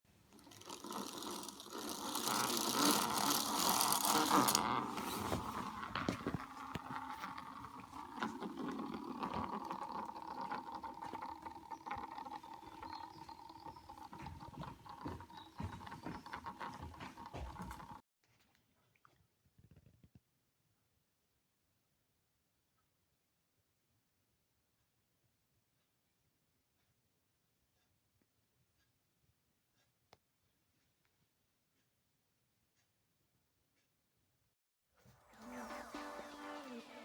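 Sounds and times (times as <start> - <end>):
spinning top hum: 0.3 - 18.0
spinning top whirring: 0.3 - 18.0, 35.3 - 37.0.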